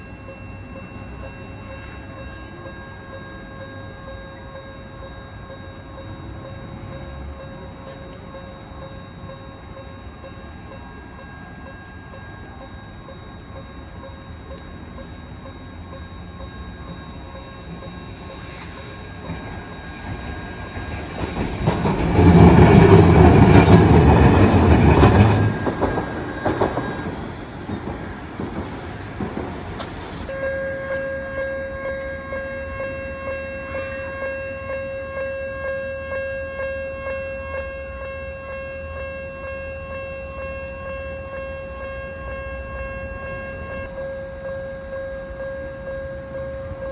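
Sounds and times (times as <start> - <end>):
train passing: 0.0 - 46.9.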